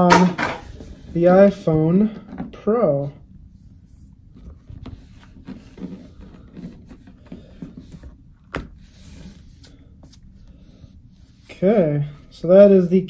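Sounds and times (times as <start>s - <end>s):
soft rubbing on plastic case: 3.6s - 8.2s.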